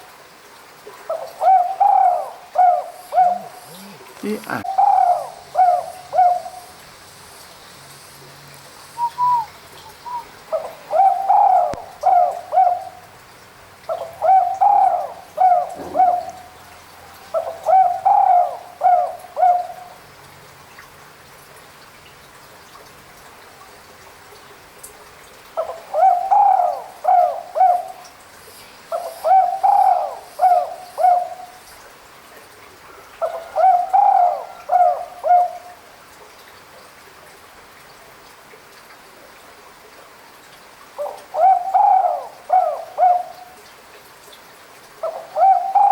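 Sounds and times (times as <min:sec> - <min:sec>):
dove cooing: 0:01.1 - 0:06.7, 0:09.0 - 0:13.0, 0:13.9 - 0:20.0, 0:25.6 - 0:28.1, 0:28.9 - 0:31.6, 0:33.2 - 0:35.7, 0:41.0 - 0:43.6, 0:45.0 - 0:45.9.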